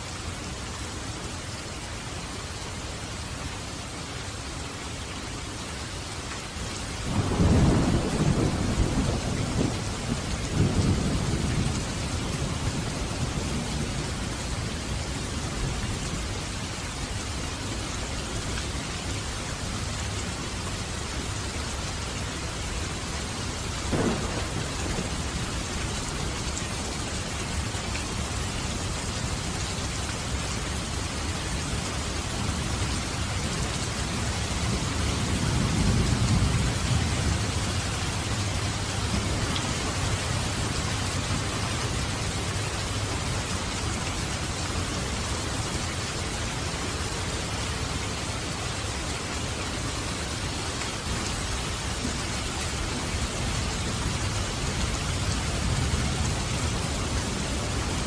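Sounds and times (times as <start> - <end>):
steady rain falling: 0.0 - 58.0
thunder rumbling: 7.1 - 14.4, 23.9 - 29.0.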